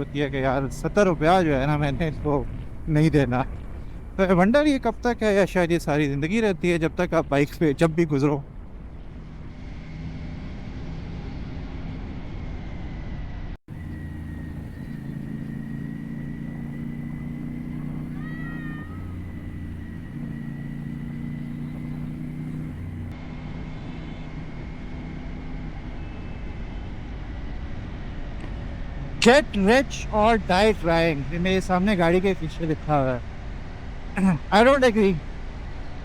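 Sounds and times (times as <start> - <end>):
motorcycle engine drone: 0.0 - 4.8, 8.4 - 36.0
wind and road noise: 0.0 - 36.0.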